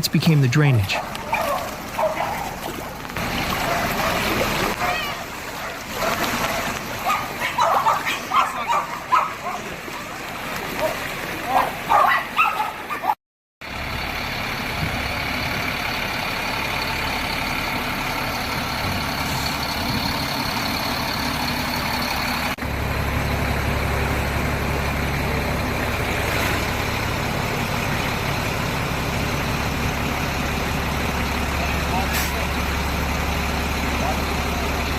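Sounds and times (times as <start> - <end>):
engine running: 0.0 - 34.9.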